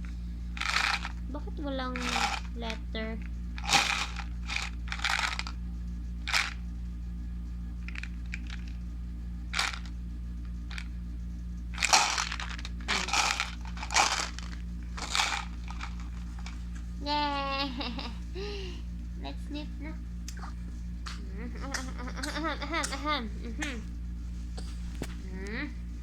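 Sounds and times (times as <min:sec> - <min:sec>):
plastic bottles shaken and rattling: 0:00.6 - 0:01.3, 0:01.9 - 0:02.8, 0:03.6 - 0:05.6, 0:06.2 - 0:06.6, 0:07.9 - 0:08.8, 0:09.6 - 0:09.9, 0:10.7 - 0:10.9, 0:11.8 - 0:16.7.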